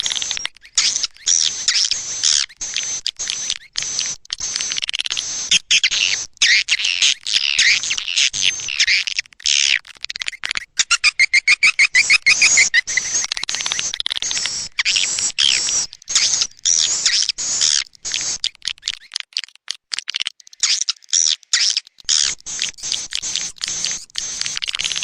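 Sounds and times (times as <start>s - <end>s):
swiftlets twittering chirps: 0.0s - 9.1s, 10.3s - 19.2s, 20.4s - 25.0s.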